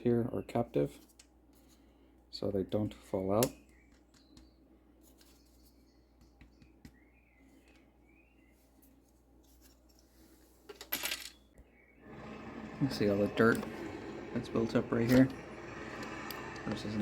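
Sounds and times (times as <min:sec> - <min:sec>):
handling plastic wheel module: 0:12.0 - 0:17.0
plastic scraping: 0:12.0 - 0:17.0.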